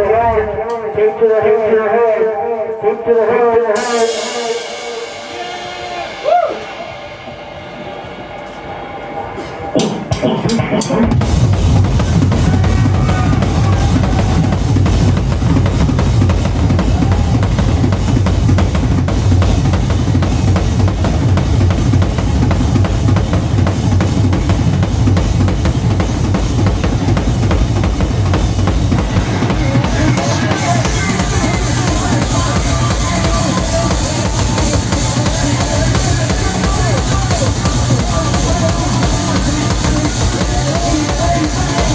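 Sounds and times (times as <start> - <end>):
fast drum kit hits: 3.8 - 8.8, 9.4 - 41.9
cymbal wash: 3.8 - 10.2
distorted bass guitar: 9.8 - 41.9.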